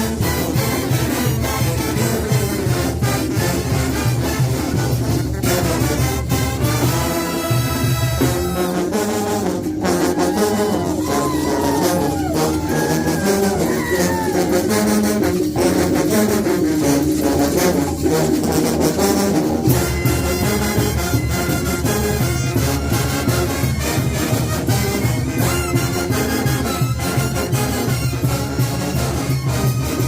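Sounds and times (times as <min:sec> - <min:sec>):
brass band playing: 0:00.0 - 0:30.0
percussion beat: 0:00.0 - 0:30.0
tuba bass: 0:00.0 - 0:30.0.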